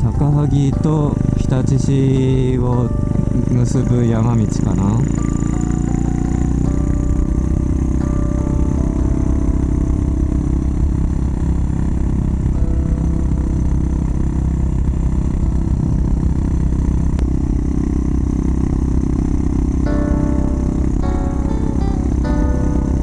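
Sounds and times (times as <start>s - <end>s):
motorcycle engine running steadily: 0.0s - 23.0s
wind rumble on microphone: 10.6s - 19.5s.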